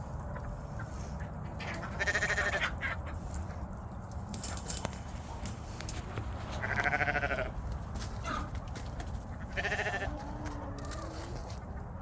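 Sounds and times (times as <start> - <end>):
sheep bleating: 2.0 - 2.7, 6.6 - 7.6, 9.5 - 10.4.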